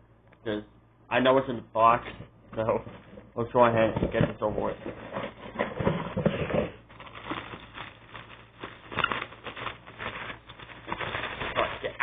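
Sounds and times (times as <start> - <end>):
cardboard box rustling: 4.0 - 11.8.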